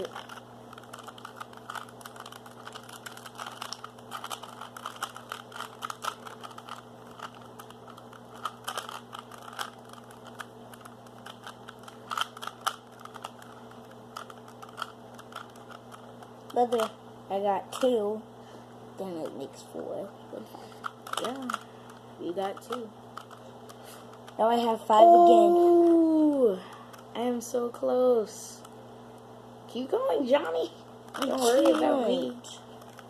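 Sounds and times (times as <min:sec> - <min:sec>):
puzzle cube clicking and rattling: 0:00.0 - 0:17.0, 0:20.7 - 0:24.4, 0:31.1 - 0:33.0
steady low hum: 0:00.0 - 0:33.0.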